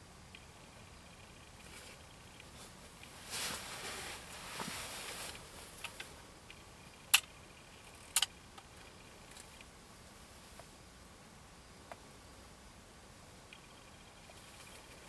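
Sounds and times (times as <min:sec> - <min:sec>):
rustling movement: 0:01.5 - 0:06.2.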